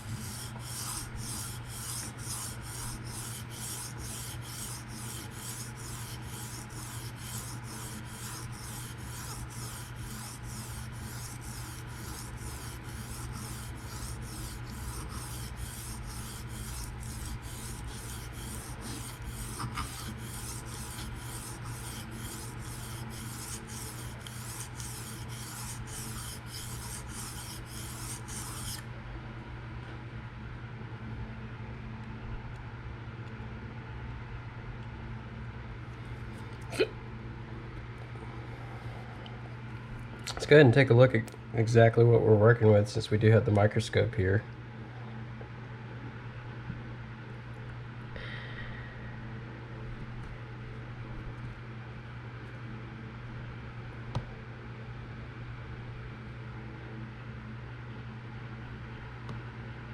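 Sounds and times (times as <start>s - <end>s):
knife rasping on sharpening stone: 0.0s - 28.8s.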